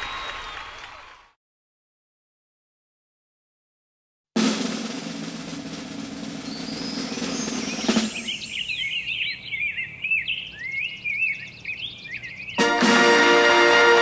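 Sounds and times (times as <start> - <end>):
drum roll ending on a hit: 4.4 - 8.5
music: 4.4 - 8.6, 12.6 - 14.0
small bird chirping: 6.5 - 12.6.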